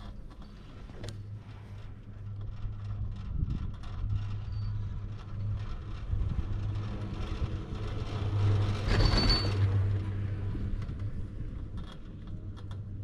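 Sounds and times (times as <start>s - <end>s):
chairlift rumble with high whine: 0.0s - 13.0s.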